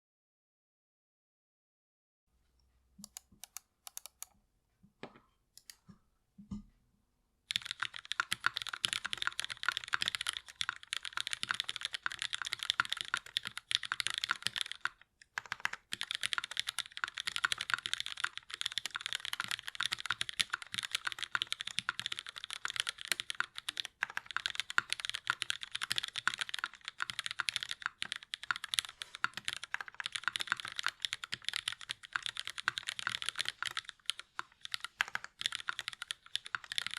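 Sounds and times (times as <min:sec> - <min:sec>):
mechanical keyboard typing: 0:03.0 - 0:04.3, 0:07.5 - 0:36.9.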